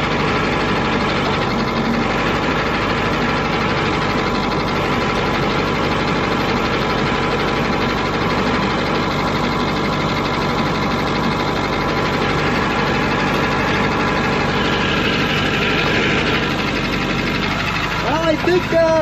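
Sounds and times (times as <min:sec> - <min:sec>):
diesel truck engine running: 0:00.0 - 0:19.0.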